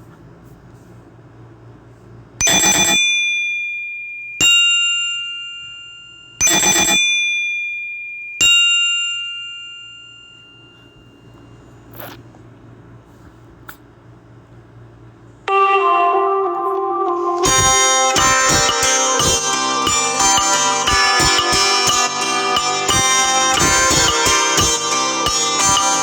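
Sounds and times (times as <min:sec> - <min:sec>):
bell-like two-note ringtone: 0:02.4 - 0:11.6, 0:15.5 - 0:26.0.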